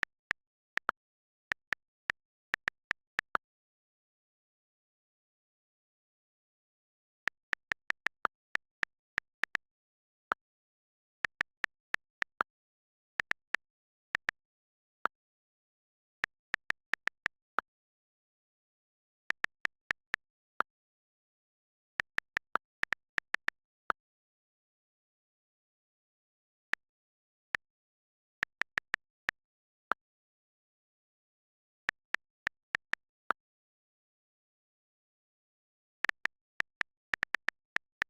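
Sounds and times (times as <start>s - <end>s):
phone keyboard clicks: 0.0s - 3.4s, 7.3s - 9.6s, 11.1s - 12.5s, 13.1s - 14.4s, 16.0s - 17.6s, 19.0s - 20.5s, 22.0s - 23.6s, 27.5s - 29.3s, 31.9s - 33.3s, 36.0s - 38.0s.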